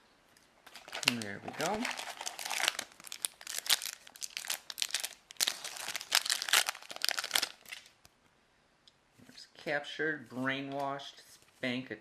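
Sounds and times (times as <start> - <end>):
plastic wrapper crinkling: 0.6 - 8.0.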